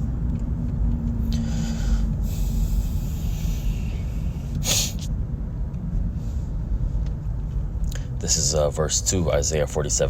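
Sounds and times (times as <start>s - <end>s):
car cabin road rumble: 0.0s - 10.0s
sharp intake of breath: 1.3s - 5.1s.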